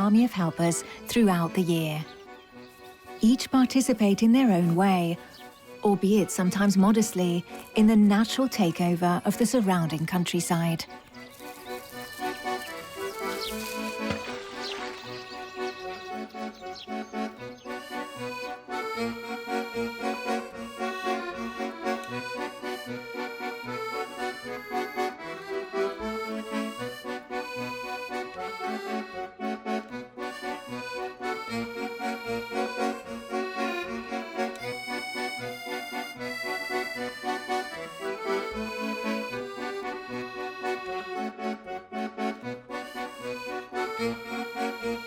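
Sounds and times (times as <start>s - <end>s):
accordion playing lively tune: 0.0s - 45.0s
plucked bass: 12.0s - 17.5s.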